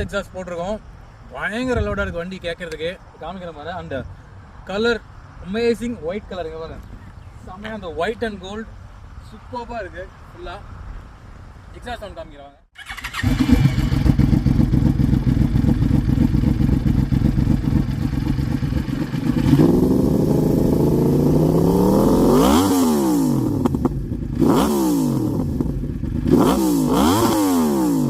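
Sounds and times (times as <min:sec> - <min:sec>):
motorcycle engine revving: 0:12.8 - 0:28.0.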